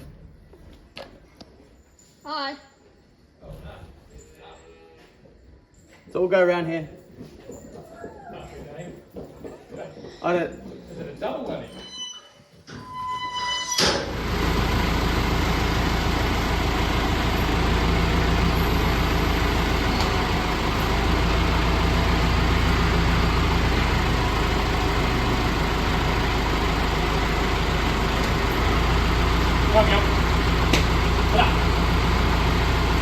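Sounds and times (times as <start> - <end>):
vehicle engine rumbling: 13.9 - 33.0.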